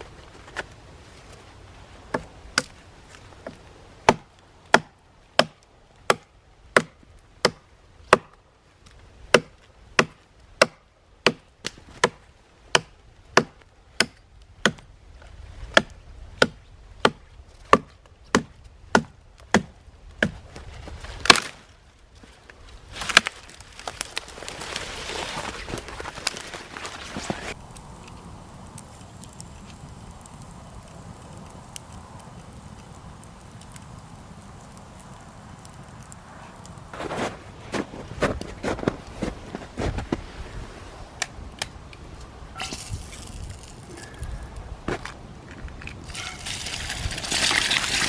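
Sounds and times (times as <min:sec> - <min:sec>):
wood being chopped: 0:02.1 - 0:02.8, 0:03.4 - 0:08.4, 0:09.3 - 0:14.9, 0:15.7 - 0:20.4, 0:21.2 - 0:21.6, 0:23.0 - 0:24.0.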